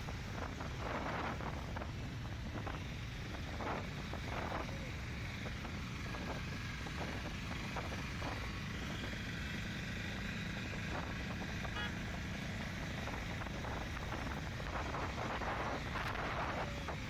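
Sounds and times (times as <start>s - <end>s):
motorcycle engine: 0.0s - 17.0s.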